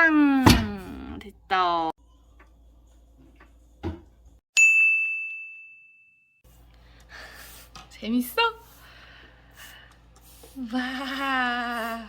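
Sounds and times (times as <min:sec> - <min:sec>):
bell ding: 0:04.6 - 0:06.4.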